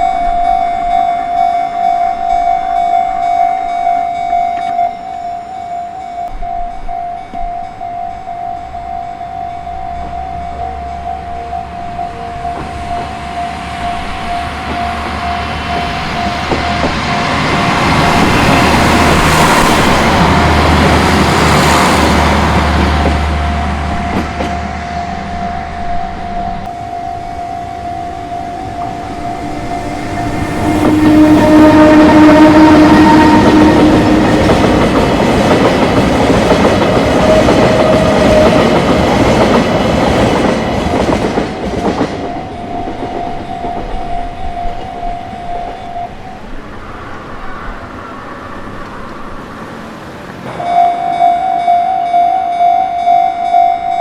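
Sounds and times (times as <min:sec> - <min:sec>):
train horn: 0:00.0 - 0:39.8, 0:41.9 - 0:48.2, 0:50.5 - 0:54.0
level-crossing warning bell: 0:00.0 - 0:48.2, 0:50.4 - 0:54.0
train wheels clattering on rails: 0:12.4 - 0:25.4, 0:28.6 - 0:47.3.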